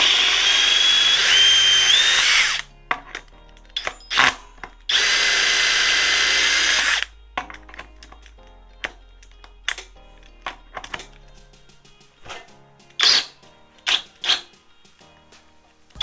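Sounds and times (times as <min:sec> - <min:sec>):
impact driver whining: 0:00.0 - 0:03.2, 0:03.8 - 0:07.1.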